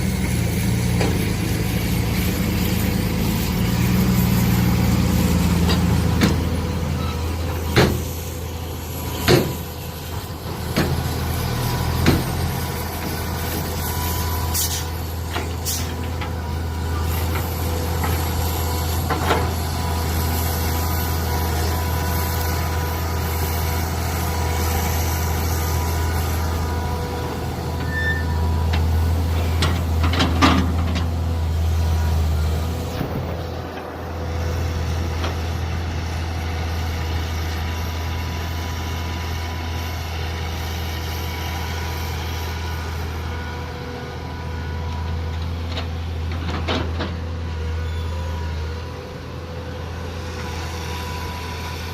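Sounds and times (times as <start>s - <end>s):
excavator engine running: 0.0s - 51.9s
sharp knocks and clanks: 7.7s - 8.1s, 9.2s - 9.6s, 12.0s - 12.4s.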